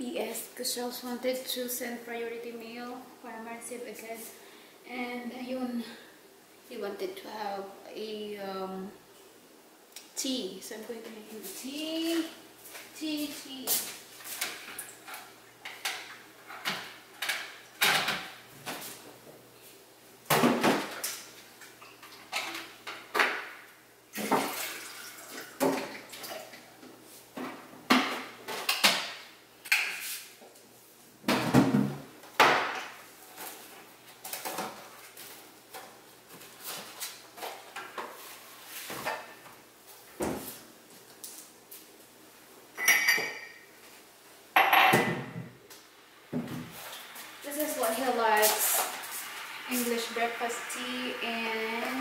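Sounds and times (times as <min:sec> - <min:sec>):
mugs and dishes clinking: 0:42.8 - 0:43.6, 0:44.6 - 0:45.2.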